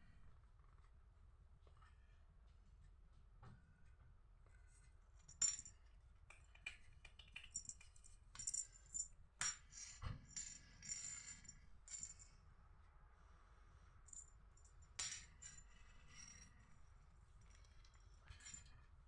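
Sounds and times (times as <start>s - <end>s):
metallic jingling and clicking: 7.2s - 9.1s.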